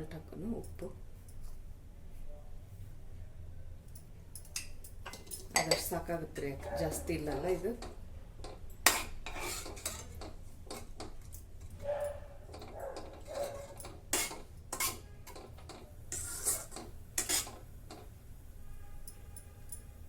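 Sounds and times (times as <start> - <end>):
metal spoon scraping a pot: 5.0 - 11.8, 12.4 - 18.1.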